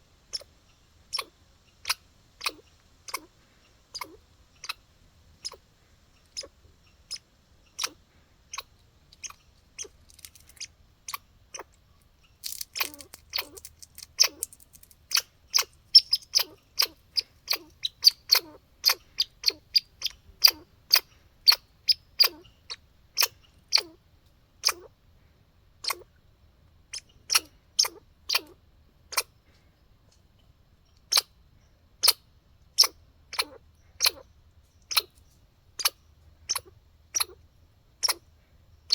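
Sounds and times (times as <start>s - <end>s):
squirrel chewing clicks: 8.6s - 11.8s, 12.4s - 21.6s.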